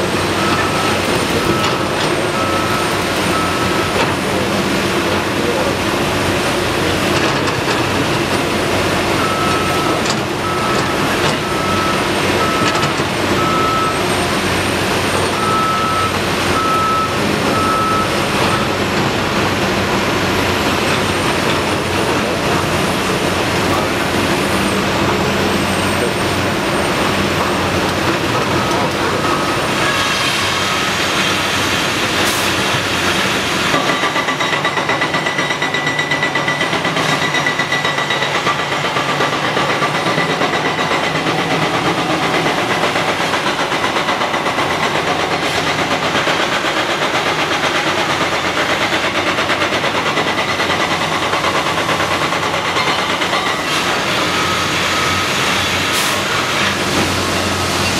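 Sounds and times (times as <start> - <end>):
excavator diesel engine running: 0.0 - 57.9.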